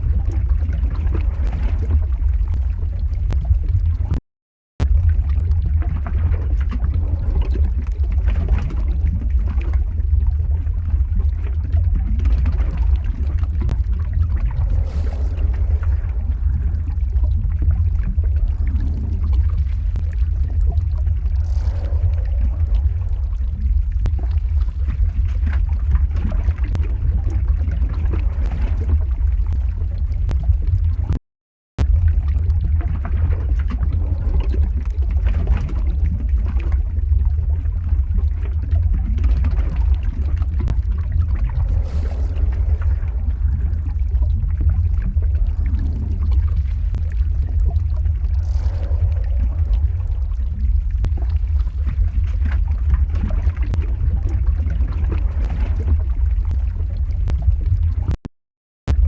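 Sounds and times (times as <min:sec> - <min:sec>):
deep rumble: 0:00.0 - 0:04.2, 0:04.8 - 0:31.2, 0:31.8 - 0:58.2
faint crackles: 0:11.1 - 0:31.2, 0:38.1 - 0:58.2.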